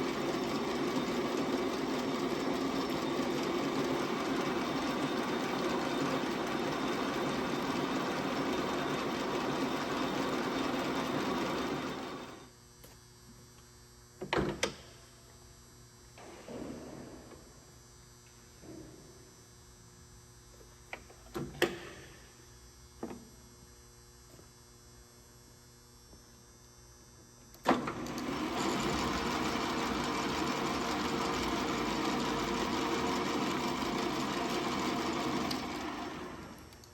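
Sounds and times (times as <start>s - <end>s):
lathe motor and gears running: 0.0s - 12.5s, 27.7s - 36.9s.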